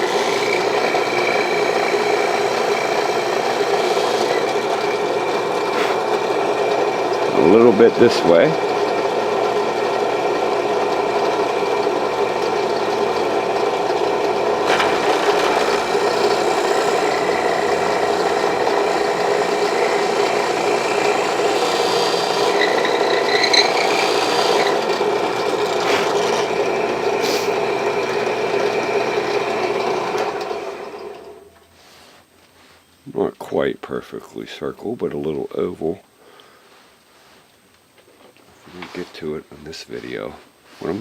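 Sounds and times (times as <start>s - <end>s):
electric drill grinding into wood: 0.0s - 31.5s.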